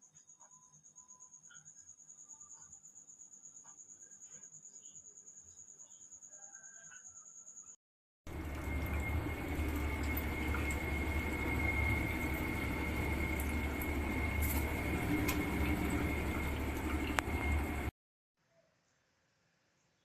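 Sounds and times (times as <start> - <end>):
water running through drain hose: 8.3 - 17.9
low hum: 8.3 - 18.0
thin high whine: 8.3 - 18.0.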